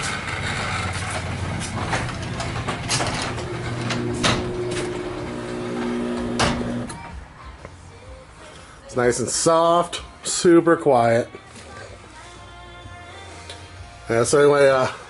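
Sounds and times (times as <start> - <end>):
garage door clacks: 0.0 - 7.0
garage door opener motor hum: 0.0 - 7.1.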